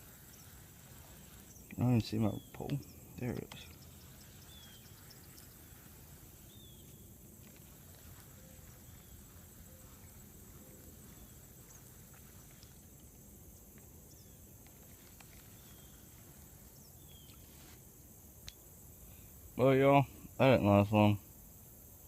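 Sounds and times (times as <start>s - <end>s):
faint bird chirps: 0.0s - 17.8s
high insect drone: 0.0s - 22.0s
faint ticks: 2.5s - 5.7s, 6.5s - 13.9s, 18.4s - 18.6s.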